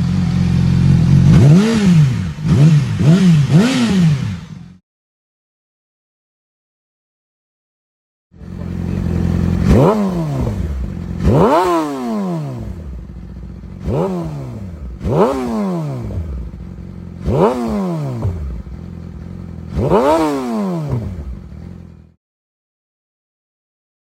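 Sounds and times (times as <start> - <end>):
motorcycle engine revving: 0.0 - 4.8, 8.4 - 22.2.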